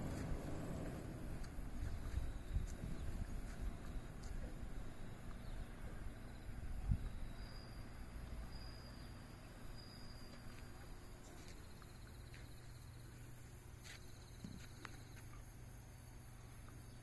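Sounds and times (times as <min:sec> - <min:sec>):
low rumble: 0:00.0 - 0:05.8
insects trilling: 0:00.0 - 0:17.0.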